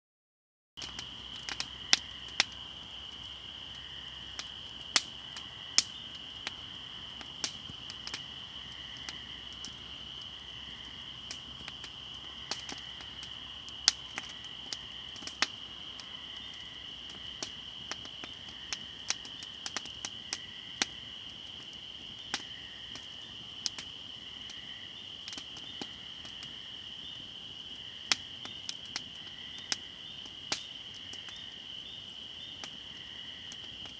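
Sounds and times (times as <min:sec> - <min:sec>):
fire crackling and popping: 0:00.8 - 0:33.9.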